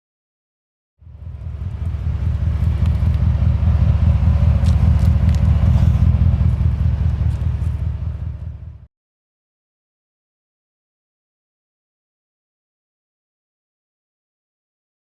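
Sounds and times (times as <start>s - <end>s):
engine with deep exhaust rumble: 1.0s - 8.9s.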